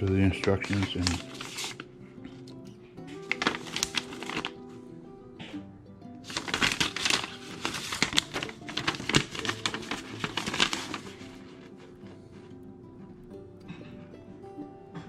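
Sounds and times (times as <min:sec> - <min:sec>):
packaging crinkling: 0:00.0 - 0:01.9, 0:03.2 - 0:04.6, 0:06.2 - 0:11.8
background music: 0:00.0 - 0:15.0.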